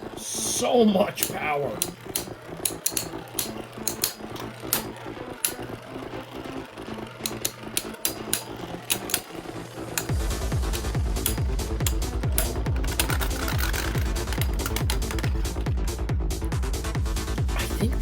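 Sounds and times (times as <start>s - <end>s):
spinning tops whirring: 0.0s - 17.6s
tops clacking together: 1.0s - 16.0s
music with heavy bass: 7.2s - 18.0s.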